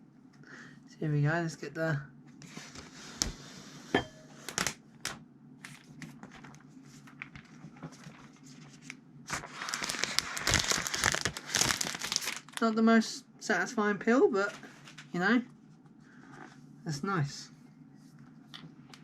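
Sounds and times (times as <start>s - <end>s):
plastic film peeling crackle: 9.3s - 12.8s.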